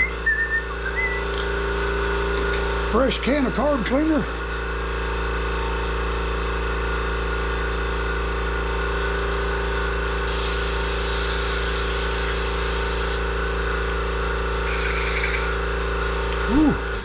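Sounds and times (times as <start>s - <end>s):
machine hum: 9.0s - 17.0s
aerosol spray hissing: 10.2s - 13.3s, 14.4s - 15.6s.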